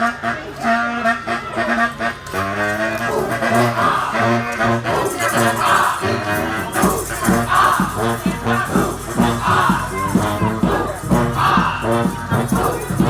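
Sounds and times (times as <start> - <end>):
brass horns playing melody: 0.0 - 13.0
steady drum beat: 3.2 - 13.0.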